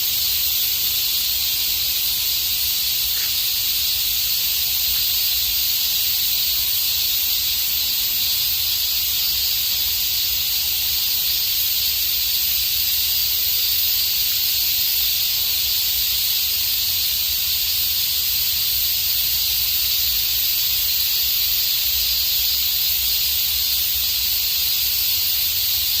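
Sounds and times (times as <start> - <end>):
cicadas buzzing: 0.0 - 26.0.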